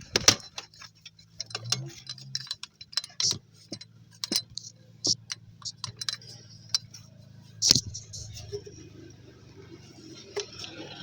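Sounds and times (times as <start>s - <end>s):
hand tools clinking on metal: 0.4s - 7.0s.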